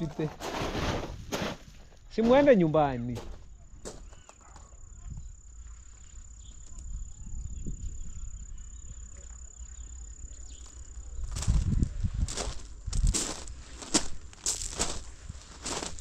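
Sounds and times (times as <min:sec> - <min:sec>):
crunching and rustling: 0:00.0 - 0:04.7, 0:10.6 - 0:16.0
high-pitched insect trill: 0:04.1 - 0:14.8.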